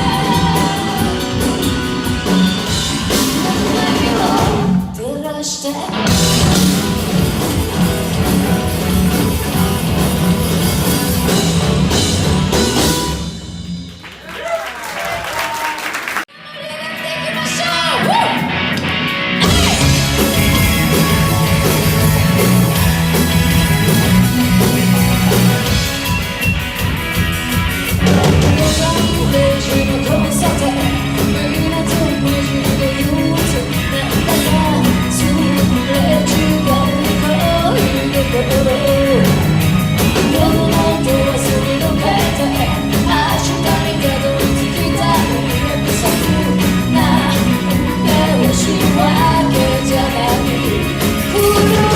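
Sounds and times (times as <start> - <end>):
person singing: 0.0 - 6.2, 28.5 - 51.9
live rock band playing: 0.0 - 14.3, 16.2 - 51.9.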